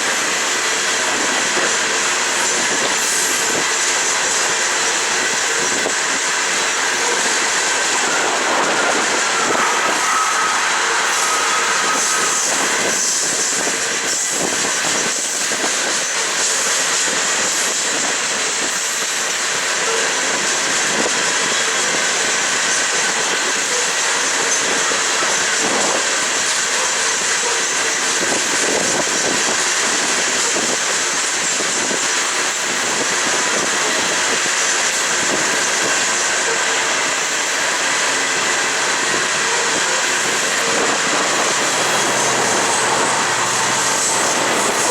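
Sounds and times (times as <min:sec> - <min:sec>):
train wheels rumbling on rails: 0:00.0 - 0:44.9
faint wheel squeal: 0:06.9 - 0:14.5.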